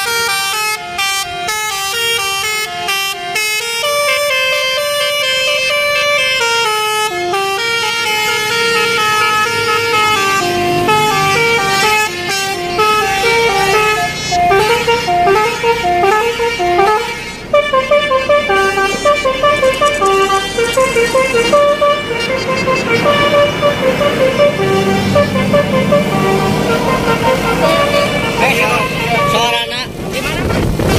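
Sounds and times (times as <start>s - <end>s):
melodic bus horn tune: 0.0s - 30.9s.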